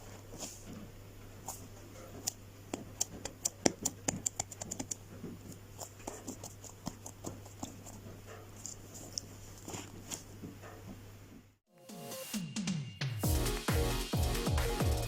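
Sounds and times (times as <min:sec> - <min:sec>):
clicks and taps of foam toys: 0:02.2 - 0:09.3.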